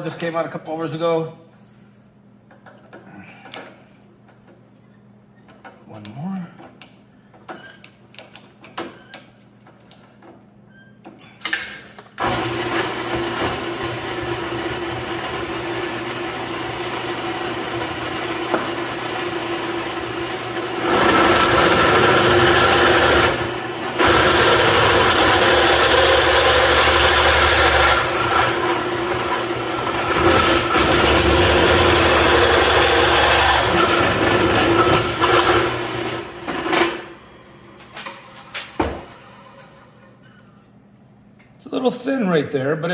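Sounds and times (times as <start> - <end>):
drill press motor running: 12.2 - 38.1
drill bit cutting steel: 18.4 - 36.1.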